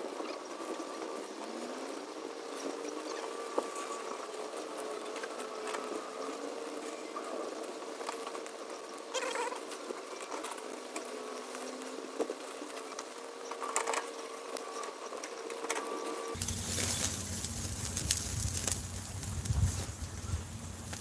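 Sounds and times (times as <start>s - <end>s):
light crackling and pattering: 0.4s - 21.0s
electrical hum: 16.3s - 21.0s.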